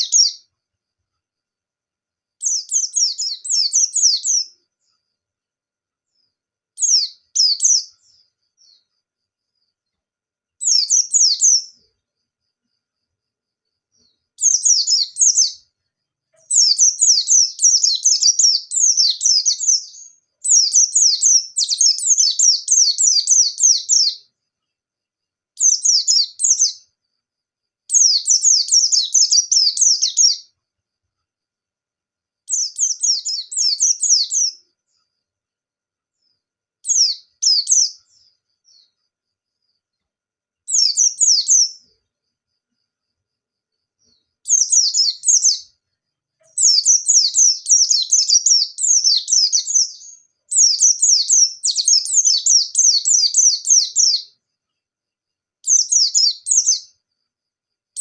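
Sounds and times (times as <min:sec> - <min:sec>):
bird chirping rapidly: 0:00.0 - 0:00.4, 0:02.4 - 0:04.6, 0:06.8 - 0:08.8, 0:10.6 - 0:11.8, 0:14.4 - 0:15.6, 0:16.4 - 0:24.2, 0:25.6 - 0:26.8, 0:27.9 - 0:30.5, 0:32.5 - 0:34.6, 0:36.8 - 0:38.0, 0:40.7 - 0:41.8, 0:44.5 - 0:45.7, 0:46.6 - 0:54.3, 0:55.7 - 0:56.9.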